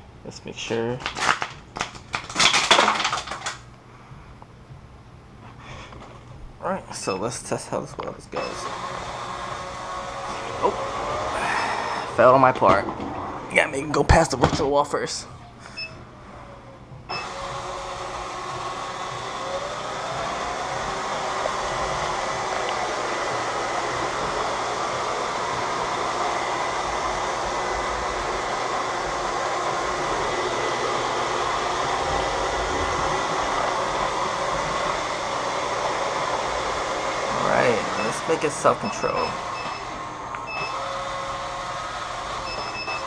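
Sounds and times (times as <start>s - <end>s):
robot vacuum whirring: 17.1s - 43.0s.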